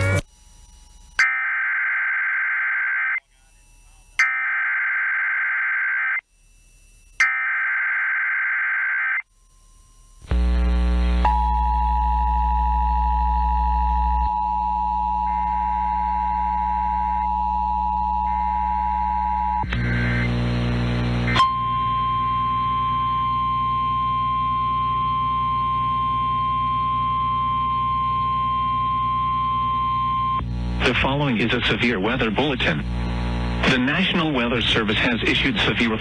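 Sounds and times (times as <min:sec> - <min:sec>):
music: 0:00.0 - 0:00.2.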